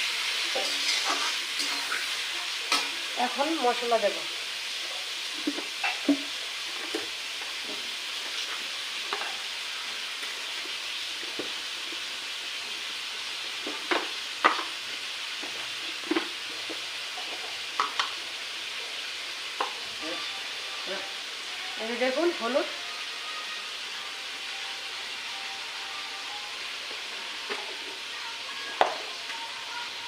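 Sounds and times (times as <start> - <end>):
chicken and onions sizzling in oil: 0.0 - 30.0
spoon scraping a pan: 0.2 - 3.1, 4.8 - 9.4.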